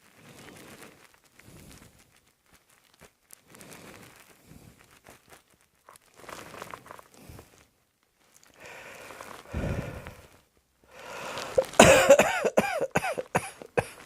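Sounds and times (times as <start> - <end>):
rustling and crinkling: 0.0 - 14.0.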